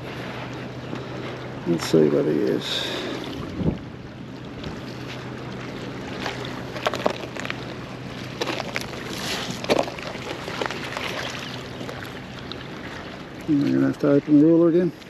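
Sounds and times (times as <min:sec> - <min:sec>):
water splashing and lapping: 0:00.0 - 0:15.0
wind on microphone: 0:03.3 - 0:03.9.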